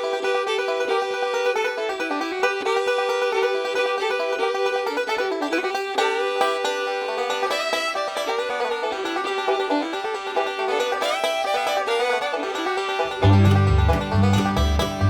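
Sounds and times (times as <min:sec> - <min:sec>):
plucked-string tune: 0:00.0 - 0:15.0
bass line: 0:13.2 - 0:15.0.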